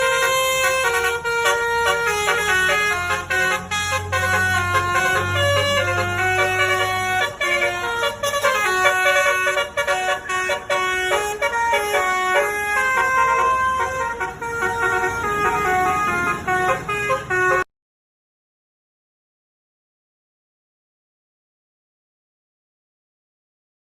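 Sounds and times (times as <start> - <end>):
bus air horn melody: 0.0 - 17.7.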